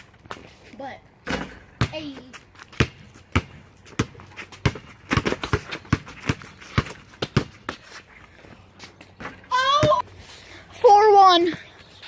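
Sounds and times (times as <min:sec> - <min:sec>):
basketball dribbling on court: 0:01.8 - 0:07.8.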